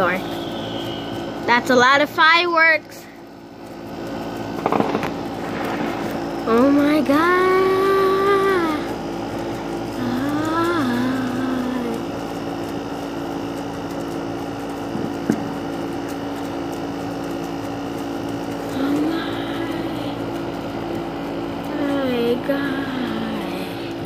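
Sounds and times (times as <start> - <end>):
air conditioner hum and hiss: 0.0 - 24.0
sharp pop: 4.6 - 5.9.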